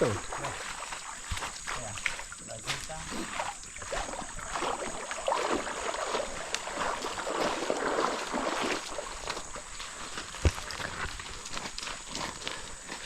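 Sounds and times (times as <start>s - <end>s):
river water splashing: 0.0s - 12.9s.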